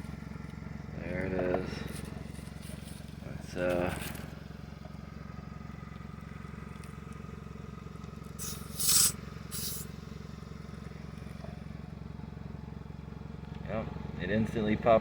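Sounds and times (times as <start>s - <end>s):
steady low hum: 0.0s - 15.0s
air hissing from tyre valve: 8.3s - 10.5s.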